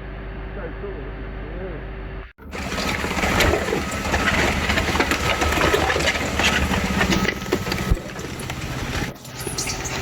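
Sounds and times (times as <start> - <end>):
concrete mixer truck engine running: 2.4 - 10.0
machinery rattling and clattering: 2.4 - 10.0.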